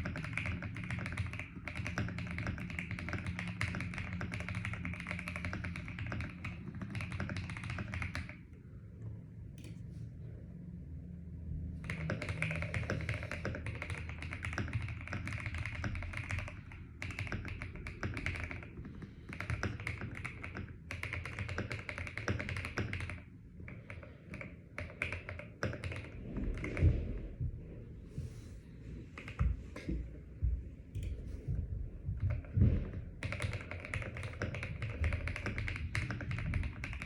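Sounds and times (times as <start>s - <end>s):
mechanical keyboard typing: 0.0s - 8.4s, 11.8s - 26.9s, 32.2s - 37.0s.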